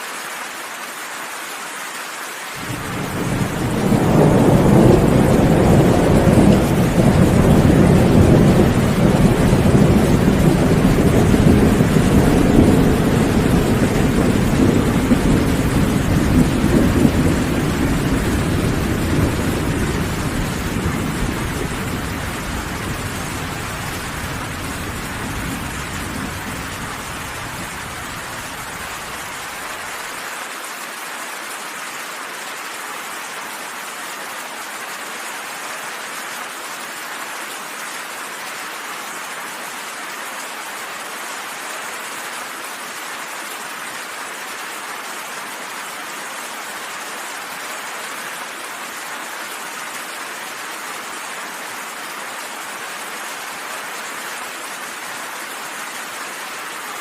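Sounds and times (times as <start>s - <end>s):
steady rain pouring: 0.0s - 57.0s
low thunder rumble: 2.7s - 29.2s.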